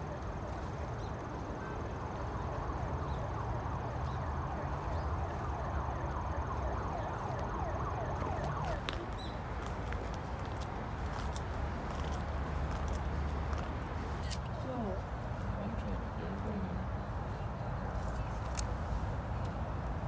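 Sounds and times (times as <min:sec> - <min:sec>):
murmur of distant voices: 0:00.0 - 0:11.6, 0:12.2 - 0:20.0.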